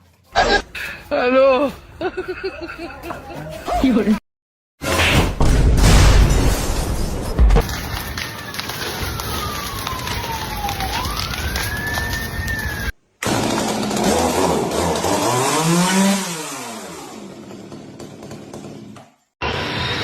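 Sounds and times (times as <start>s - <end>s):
engine revving: 13.3s - 17.4s.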